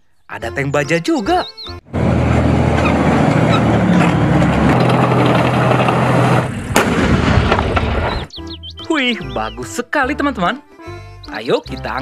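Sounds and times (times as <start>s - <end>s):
heavy tank engine running: 1.9s - 8.2s
sharp crack: 3.9s - 8.3s.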